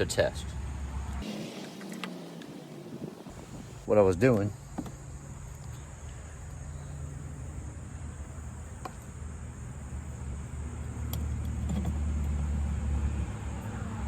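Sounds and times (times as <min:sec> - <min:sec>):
low engine hum: 0:05.0 - 0:14.0.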